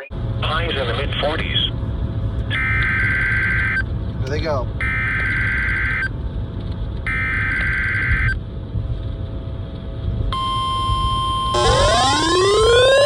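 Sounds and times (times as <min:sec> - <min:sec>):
steady weather radio alert tone: 0:10.4 - 0:13.0
rising sweeping tones: 0:11.5 - 0:13.0.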